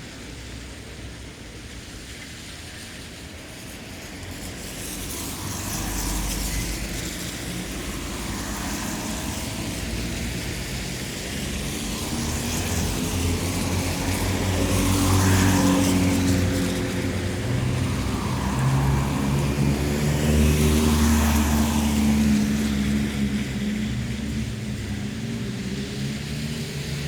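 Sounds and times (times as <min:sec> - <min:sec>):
cars passing on wet road: 0:00.0 - 0:27.0
vehicle engine approaching: 0:05.4 - 0:27.0.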